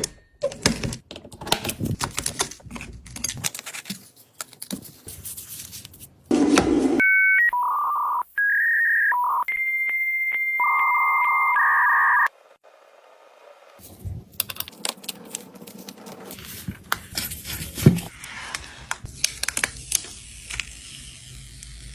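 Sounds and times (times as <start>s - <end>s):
electronic beep tones: 7.0s - 12.3s.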